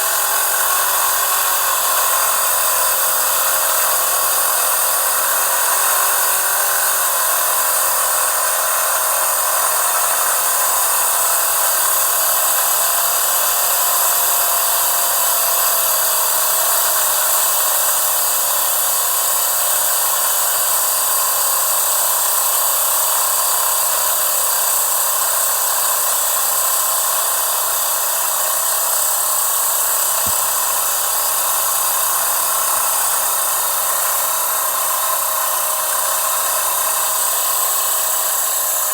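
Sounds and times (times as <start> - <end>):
lint remover motor whirring: 0.0 - 21.7, 25.2 - 38.9.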